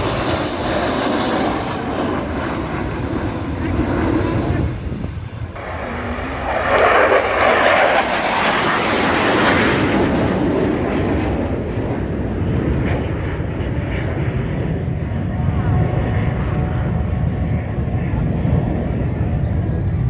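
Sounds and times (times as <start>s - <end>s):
jet aircraft flying past: 0.0s - 20.0s.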